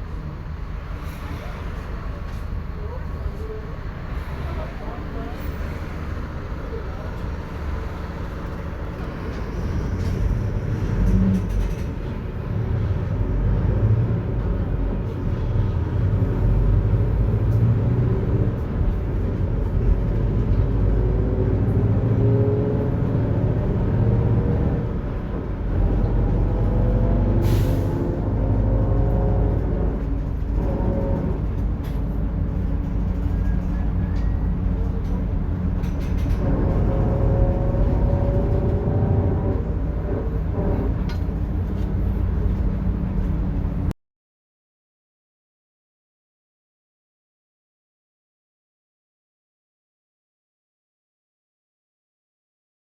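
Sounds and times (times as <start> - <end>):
low drivetrain rumble: 0.0 - 43.9
bus differential whining: 15.8 - 43.9.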